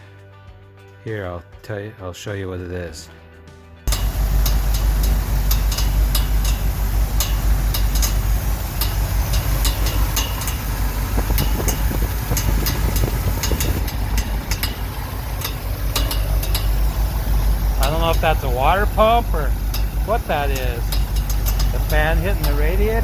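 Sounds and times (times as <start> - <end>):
engine idling: 3.9 - 23.0
fan ticking against something: 3.9 - 23.0.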